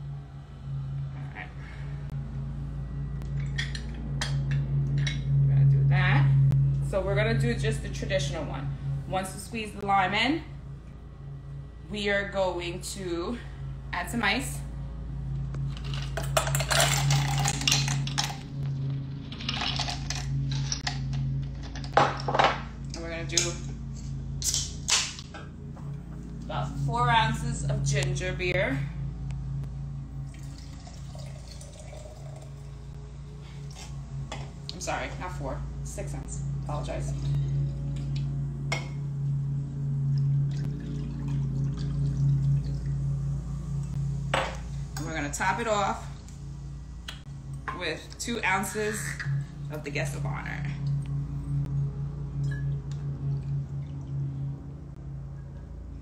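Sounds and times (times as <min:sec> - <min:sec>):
low hum: 0:00.0 - 0:56.0
ice cubes clinking in mug: 0:15.8 - 0:18.4, 0:19.3 - 0:21.0.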